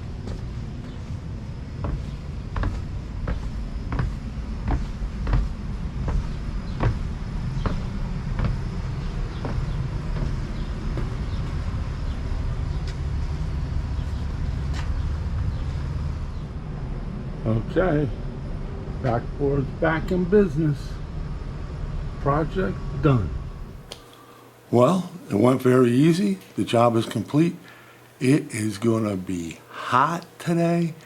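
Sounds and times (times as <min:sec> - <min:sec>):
footsteps walking: 0:00.0 - 0:15.0
steady low rumble: 0:00.0 - 0:23.9.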